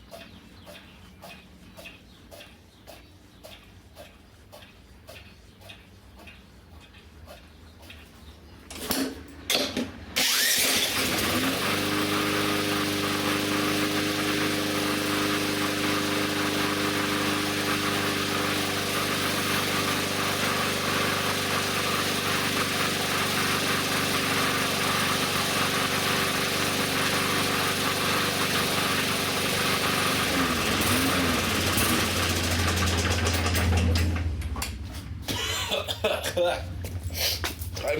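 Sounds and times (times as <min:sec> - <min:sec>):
small gasoline engine running: 0:09.5 - 0:34.4
electric drill spinning engine: 0:10.1 - 0:34.2.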